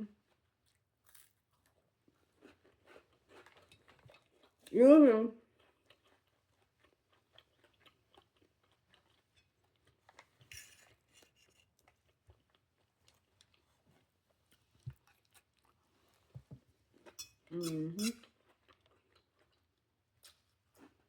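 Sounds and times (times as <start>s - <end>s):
chewing and crunching food: 0.1s - 21.0s.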